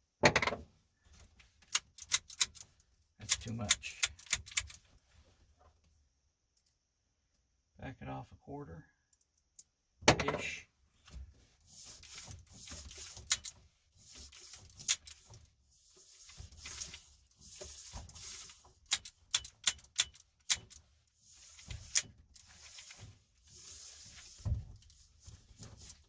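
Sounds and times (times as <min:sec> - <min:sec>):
retractor mechanism clicks: 0:01.6 - 0:04.8, 0:12.7 - 0:13.6, 0:16.6 - 0:20.8
seatbelt webbing sliding: 0:11.6 - 0:26.0.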